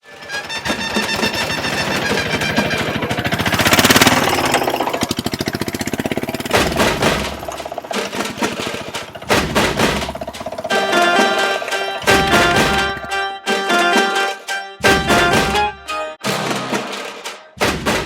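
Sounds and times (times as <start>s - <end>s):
small vehicle motor pulsing: 0.0s - 13.3s
steady tones: 0.6s - 17.6s.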